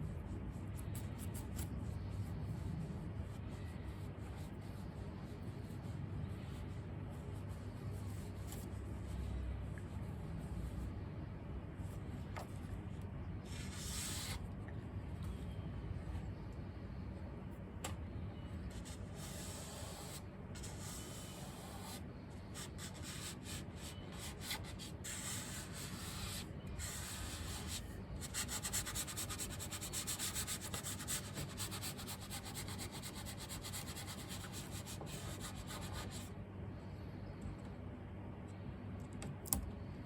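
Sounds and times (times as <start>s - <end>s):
hand rubbing on a decal: 0.2s - 10.9s, 18.7s - 36.3s.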